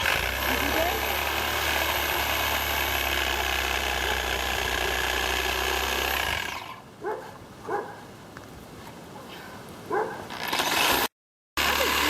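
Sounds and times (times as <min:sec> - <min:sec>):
electric power saw cutting wood: 0:00.0 - 0:06.8, 0:10.3 - 0:12.0.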